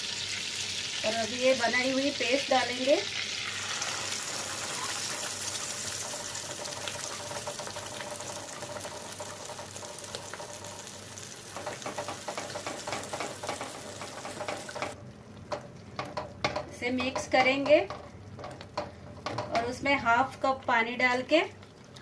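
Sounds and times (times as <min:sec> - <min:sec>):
paste sizzling in hot oil: 0:00.0 - 0:15.0
spoon knocking and scraping pan: 0:11.4 - 0:19.8.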